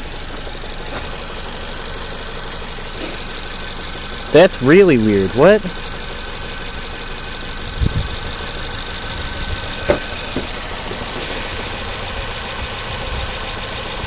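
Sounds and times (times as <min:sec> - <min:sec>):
car engine idling: 0:00.0 - 0:14.0
engine misfire knocks: 0:07.8 - 0:12.9.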